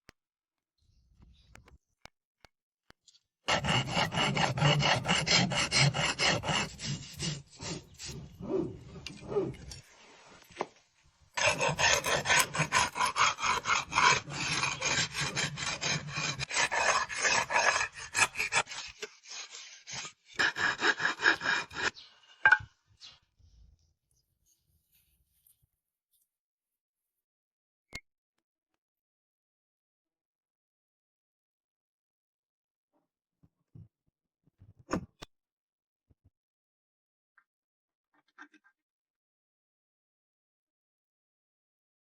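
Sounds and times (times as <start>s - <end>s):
hand rasp scraping wood: 3.5s - 9.8s, 11.4s - 22.3s.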